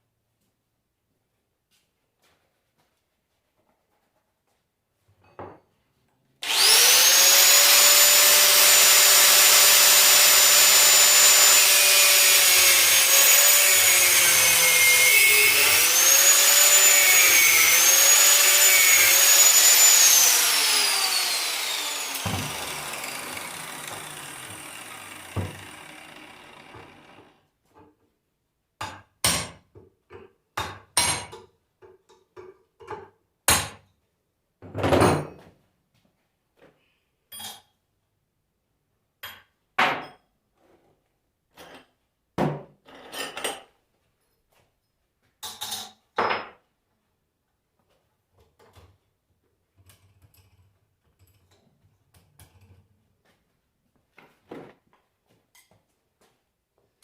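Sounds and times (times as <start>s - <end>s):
steady whirring: 6.4s - 27.3s.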